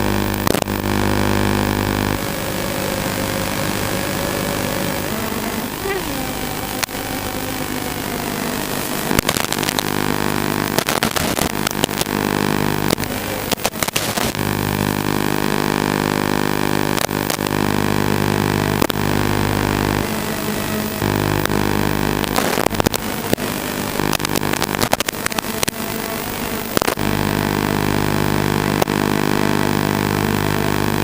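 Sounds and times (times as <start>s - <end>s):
drone motors and propellers: 0.0s - 31.0s
sharp cracks: 0.2s - 1.1s, 8.6s - 18.1s, 18.7s - 20.1s, 21.0s - 25.8s, 26.6s - 27.2s.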